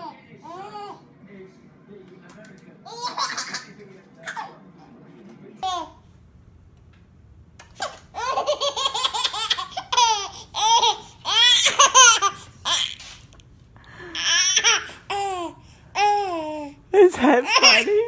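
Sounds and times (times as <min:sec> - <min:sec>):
baby laughing: 0:02.8 - 0:04.6, 0:05.6 - 0:06.0, 0:07.7 - 0:13.1, 0:14.2 - 0:16.7, 0:17.4 - 0:18.0.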